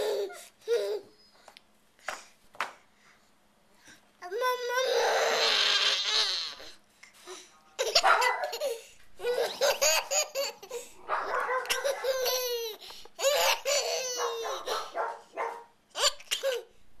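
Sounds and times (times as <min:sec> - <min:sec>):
small child giggling: 0:07.8 - 0:11.0, 0:11.6 - 0:14.9.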